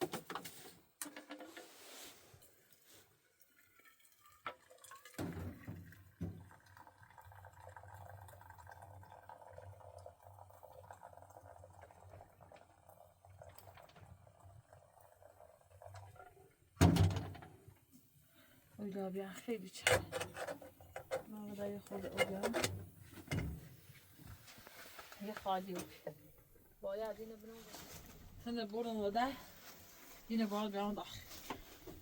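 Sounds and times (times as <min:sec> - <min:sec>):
water pouring into container: 0:02.6 - 0:16.5.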